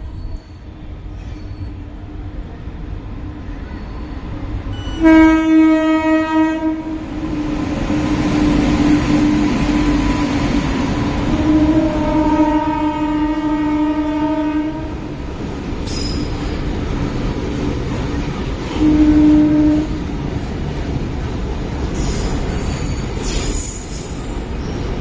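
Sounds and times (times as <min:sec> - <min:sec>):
train wheels rumbling and clattering: 0:00.0 - 0:25.0
locomotive horn blasts: 0:04.8 - 0:07.1, 0:11.3 - 0:14.9, 0:18.8 - 0:20.0.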